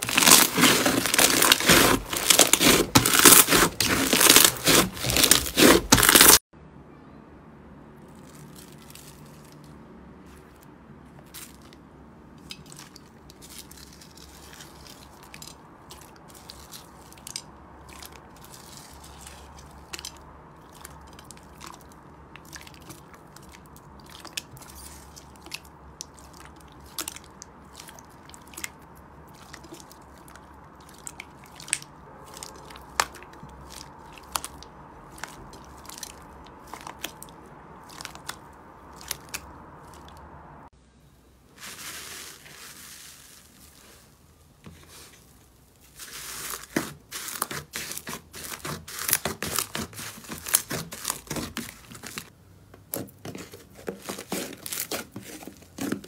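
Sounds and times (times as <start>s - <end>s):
slime crackling and popping: 0.0s - 6.4s, 13.3s - 40.2s.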